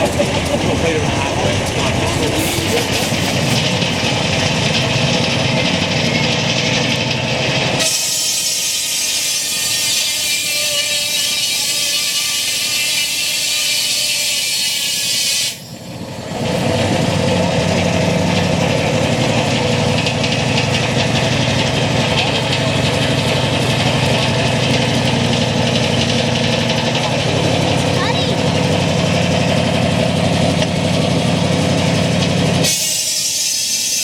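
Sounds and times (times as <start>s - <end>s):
sawmill and steam engine running: 0.0s - 34.0s.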